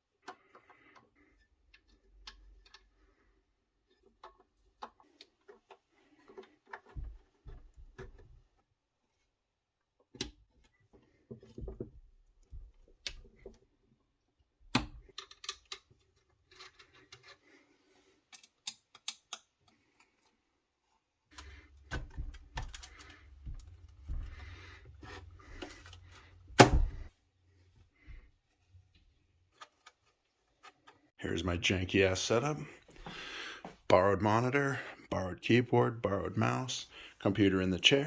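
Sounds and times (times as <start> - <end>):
hardware clicks and taps: 21.3 - 26.0.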